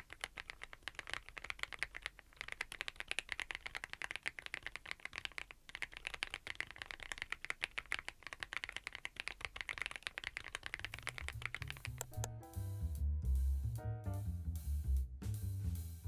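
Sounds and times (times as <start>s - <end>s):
mechanical keyboard typing: 0.0s - 12.4s
background music with bass line: 10.9s - 16.0s.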